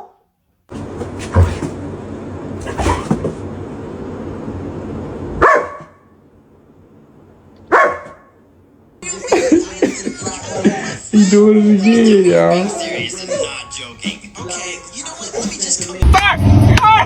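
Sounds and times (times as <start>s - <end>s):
dog barking: 0.0s - 0.3s, 5.4s - 6.1s, 7.7s - 8.4s.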